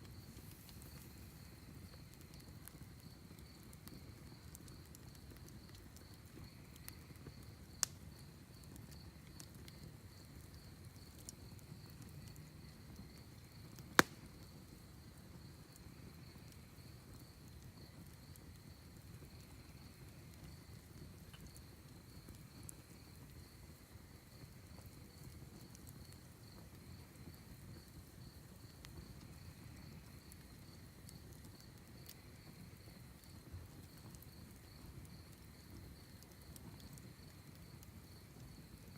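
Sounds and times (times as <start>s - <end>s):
campfire crackling: 0.0s - 38.9s
wood popping: 14.0s - 14.2s.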